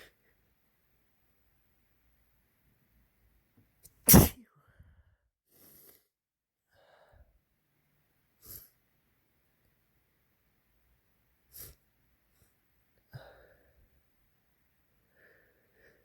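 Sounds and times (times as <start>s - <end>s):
loud sneeze: 3.9s - 4.4s
breaths: 4.5s - 6.0s, 6.7s - 7.3s, 13.1s - 13.9s, 15.1s - 16.0s.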